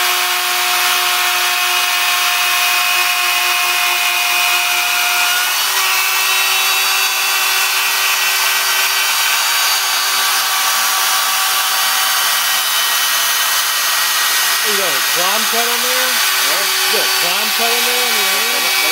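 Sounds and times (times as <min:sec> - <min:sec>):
router cutter hissing: 0:00.0 - 0:18.9
spindle whining: 0:13.4 - 0:18.9.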